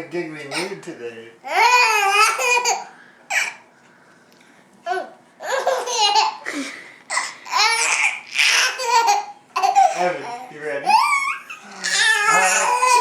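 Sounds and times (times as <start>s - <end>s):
baby giggling: 1.5s - 3.6s, 4.9s - 13.0s.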